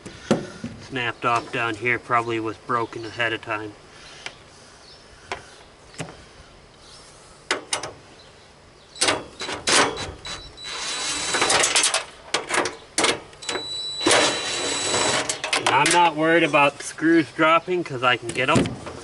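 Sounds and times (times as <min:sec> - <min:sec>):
sharp clicks and knocks: 0:07.5 - 0:08.0, 0:15.2 - 0:16.1
power drill whining: 0:10.6 - 0:11.7, 0:13.5 - 0:15.4.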